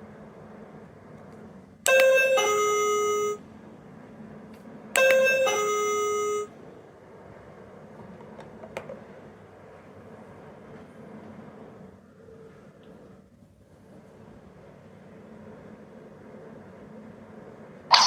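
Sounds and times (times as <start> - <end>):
electronic doorbell chime: 1.9 - 3.4, 5.0 - 6.6.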